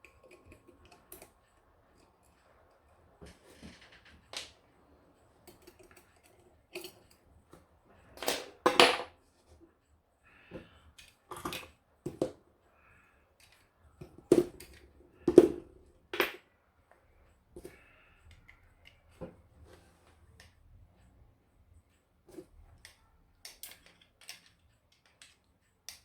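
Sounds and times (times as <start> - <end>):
small hard parts clicking and knocking: 0.0 - 4.7, 5.4 - 9.2, 10.4 - 12.4, 13.4 - 16.5, 22.3 - 26.0.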